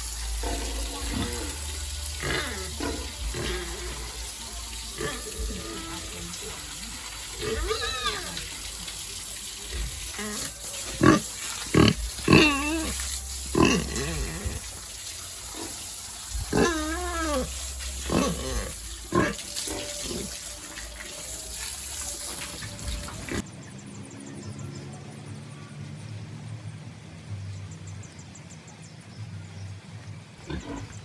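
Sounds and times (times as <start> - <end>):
pigs calling: 0.0 - 21.7.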